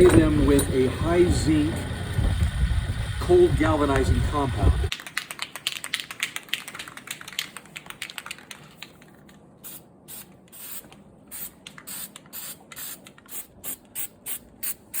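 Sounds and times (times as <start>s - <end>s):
aerosol can spraying hissing bursts: 9.6s - 15.0s.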